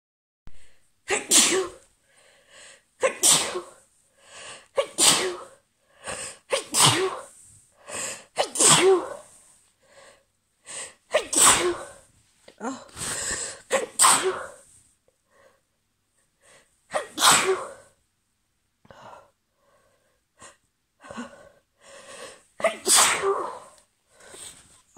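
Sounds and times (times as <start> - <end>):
woman sneezing: 1.1 - 1.8, 3.0 - 3.8, 4.8 - 5.6, 6.4 - 7.3, 8.4 - 9.2, 11.1 - 12.0, 12.6 - 14.6, 16.9 - 17.9, 22.6 - 23.8
catching breath: 12.9 - 13.6.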